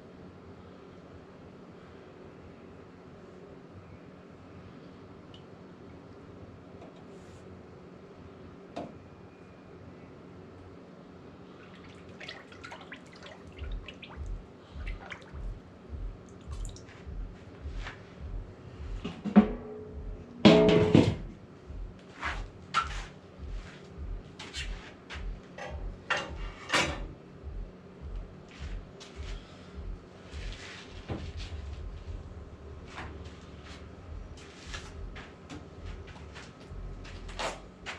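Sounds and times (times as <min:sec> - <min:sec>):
music with low beat: 0:13.5 - 0:37.9.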